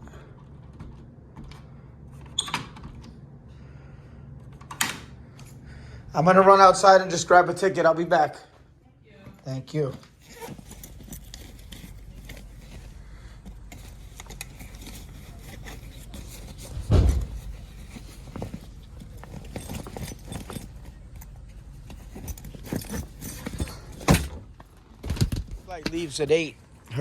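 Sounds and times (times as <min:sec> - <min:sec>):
footsteps: 0:08.4 - 0:21.1
handling clicks and knocks: 0:09.8 - 0:26.2
heavy thump: 0:16.6 - 0:18.6.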